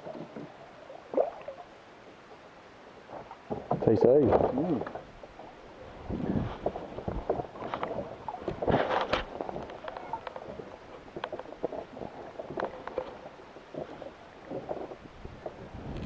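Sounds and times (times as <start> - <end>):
knocks and rattles on a boat: 0.0 - 0.6, 3.1 - 5.1, 6.0 - 16.0.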